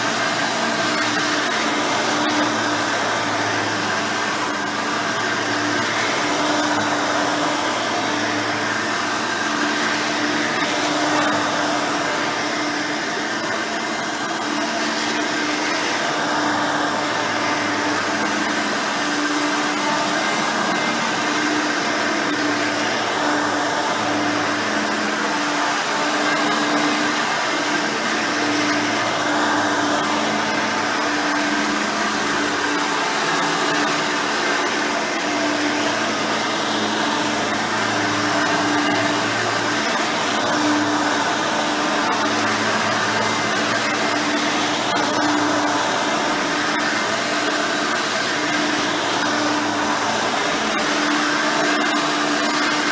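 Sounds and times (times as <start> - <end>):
upright vacuum cleaner running: 0.0 - 52.9.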